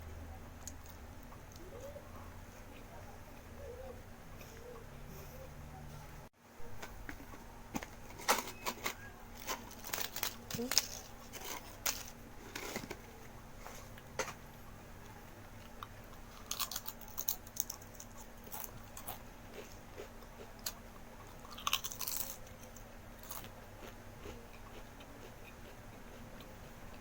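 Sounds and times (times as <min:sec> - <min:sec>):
faint steady hum: 0:00.0 - 0:27.0
chewing crunchy food: 0:15.6 - 0:27.0.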